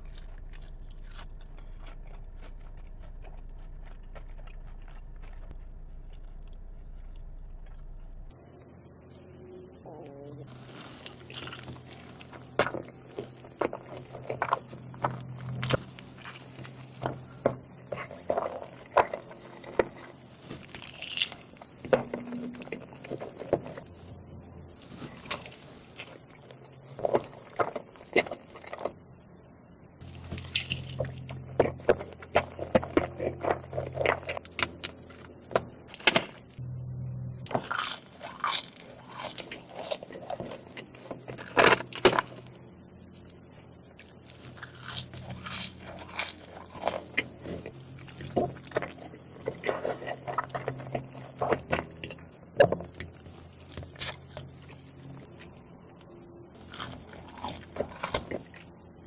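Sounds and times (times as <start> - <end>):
food handling: 0.0 - 8.3, 10.5 - 17.3
chewing and crunching food: 0.0 - 36.6, 37.4 - 59.0.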